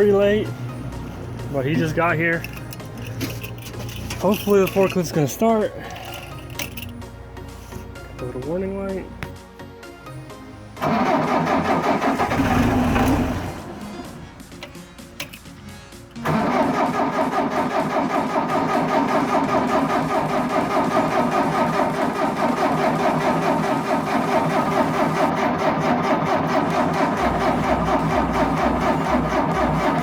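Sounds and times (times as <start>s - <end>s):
forklift engine idling: 10.8s - 14.6s, 16.2s - 30.0s.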